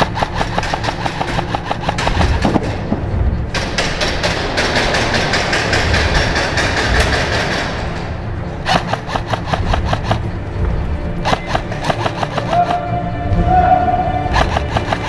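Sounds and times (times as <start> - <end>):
gearbox motor whirring: 0.0 - 2.4, 8.0 - 12.9, 14.3 - 15.0
airsoft gun firing bursts: 0.0 - 2.9, 8.6 - 10.4, 11.2 - 12.8, 14.3 - 15.0.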